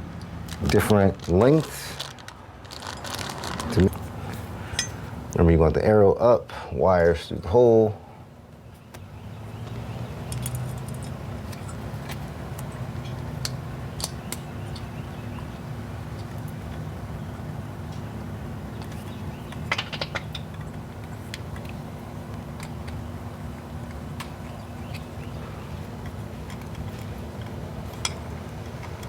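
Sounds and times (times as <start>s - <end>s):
steady low hum: 0.0s - 29.0s
metal screws clicking and rattling: 10.2s - 14.9s, 26.0s - 29.0s.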